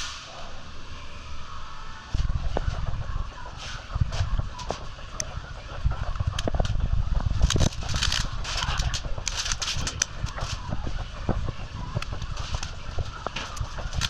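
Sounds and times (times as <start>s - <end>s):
hiss: 0.0s - 1.9s
low rumble: 0.0s - 14.0s.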